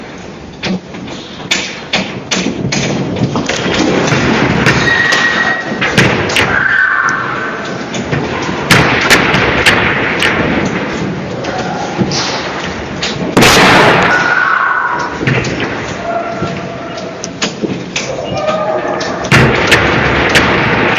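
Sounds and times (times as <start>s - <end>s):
knocks and thuds rattling: 0.0s - 6.6s, 7.4s - 14.4s, 15.0s - 20.9s
loud sharp bangs: 0.0s - 18.0s, 18.8s - 20.9s
high creaks: 4.7s - 8.6s
building shaking rumble: 7.2s - 18.0s, 18.8s - 20.9s.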